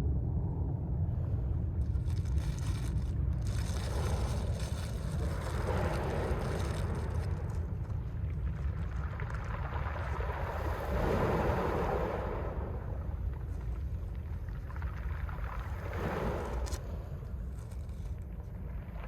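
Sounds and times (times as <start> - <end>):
wind rumble on microphone: 0.0 - 19.0
sea waves washing ashore: 2.8 - 7.8, 8.7 - 18.0.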